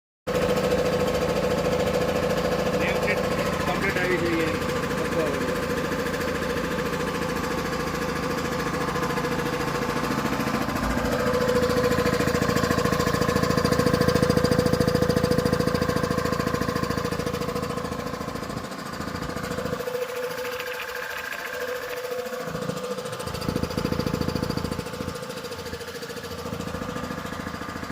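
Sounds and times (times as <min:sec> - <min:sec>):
air compressor running: 0:00.3 - 0:27.9.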